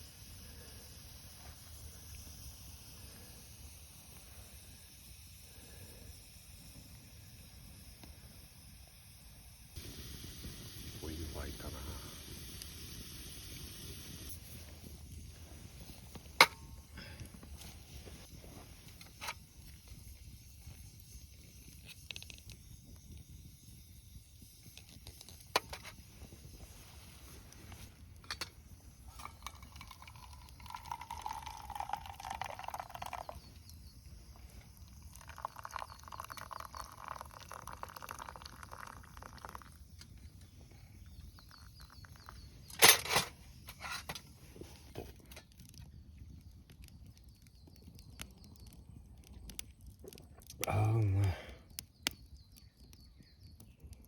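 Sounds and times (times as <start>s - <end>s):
water being poured into container: 29.0s - 39.9s.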